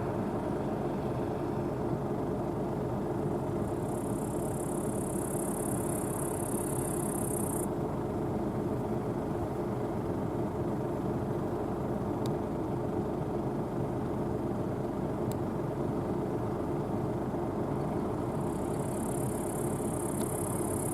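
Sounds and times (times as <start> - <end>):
combine harvester running: 0.0 - 20.9.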